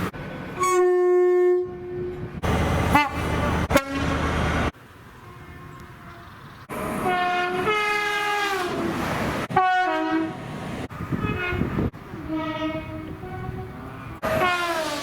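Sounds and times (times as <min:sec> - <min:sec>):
train horn blasts: 0:00.6 - 0:02.3, 0:02.9 - 0:04.2, 0:07.0 - 0:08.9, 0:09.5 - 0:10.4, 0:11.2 - 0:15.0
train running noise: 0:01.8 - 0:15.0.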